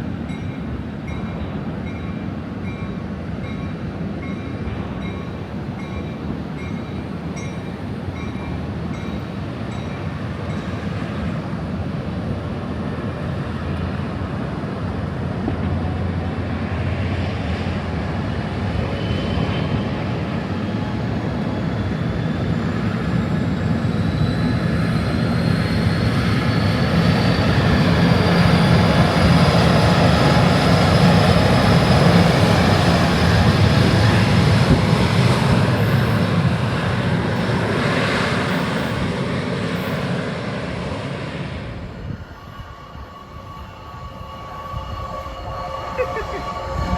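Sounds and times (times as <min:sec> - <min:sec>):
train rumbling past: 0:00.0 - 0:46.9.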